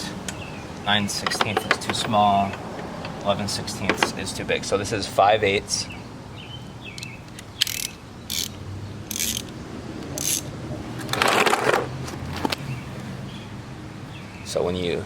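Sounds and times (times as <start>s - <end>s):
socket wrench ratchet clicking: 7.0s - 9.6s, 10.2s - 10.5s.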